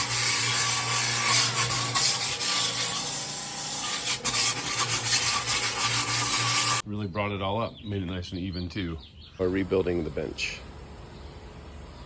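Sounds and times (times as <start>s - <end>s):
sander motor hum: 0.0s - 6.8s
sander scraping wooden boards: 0.0s - 6.8s.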